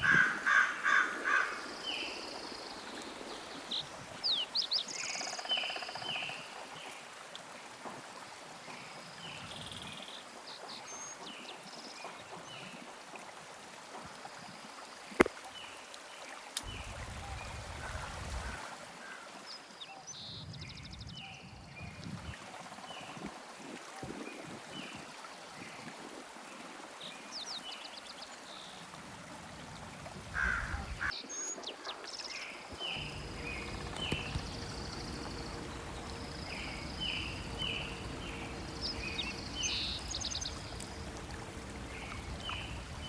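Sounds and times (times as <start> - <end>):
steady rushing hiss: 32.7 - 43.0
bird chirps: 32.8 - 43.0.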